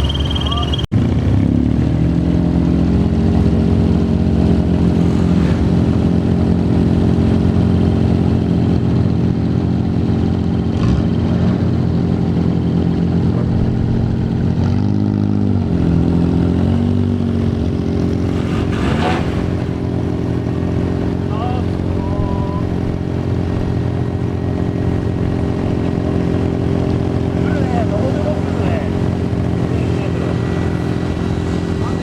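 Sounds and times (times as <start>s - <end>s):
vehicle engine running: 0.0s - 32.0s.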